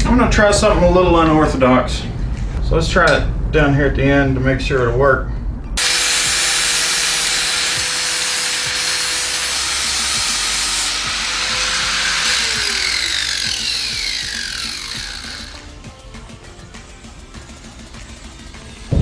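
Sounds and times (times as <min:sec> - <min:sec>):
power tool grinding metal: 0:05.8 - 0:15.7.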